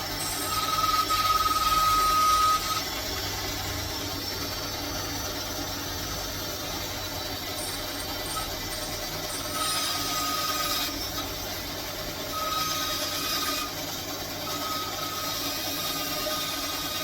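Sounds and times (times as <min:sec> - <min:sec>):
high steady whine: 0:00.0 - 0:13.8
bandsaw cutting wood: 0:12.3 - 0:13.8.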